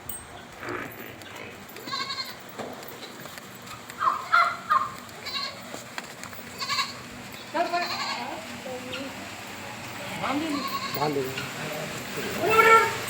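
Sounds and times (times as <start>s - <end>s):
livestock bleating: 0.6s - 2.4s, 4.8s - 5.7s, 6.6s - 8.4s, 9.7s - 11.4s, 12.3s - 13.0s.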